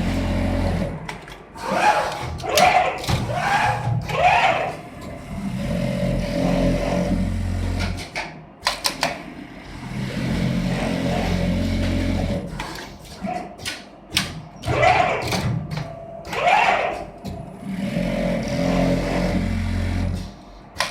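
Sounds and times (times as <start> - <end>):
sewing machine motor running: 0.0 - 1.0, 9.6 - 12.6, 16.4 - 20.3.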